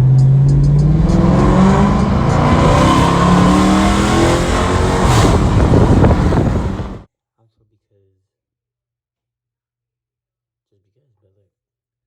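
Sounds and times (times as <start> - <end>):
loud car exhaust revving: 0.0 - 7.0.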